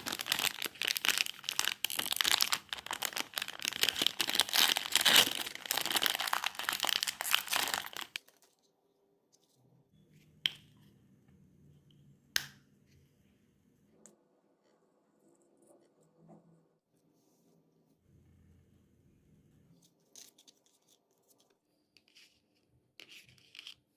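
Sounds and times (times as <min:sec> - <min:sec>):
wrapping torn and crumpled: 0:00.0 - 0:08.5.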